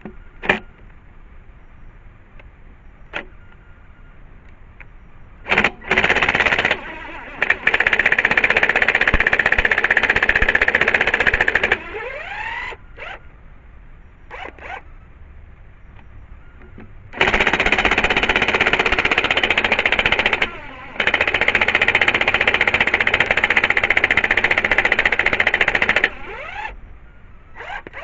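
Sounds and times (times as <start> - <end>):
motor whine: 25.6 - 28.0.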